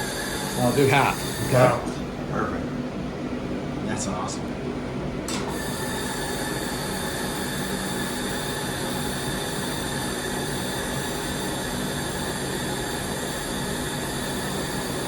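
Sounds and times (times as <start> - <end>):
laser welder hissing: 0.0 - 2.0, 5.5 - 15.0.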